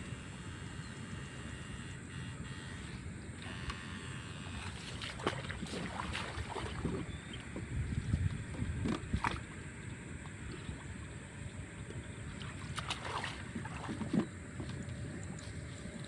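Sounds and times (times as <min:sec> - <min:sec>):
water sloshing and splashing: 0:04.4 - 0:16.0.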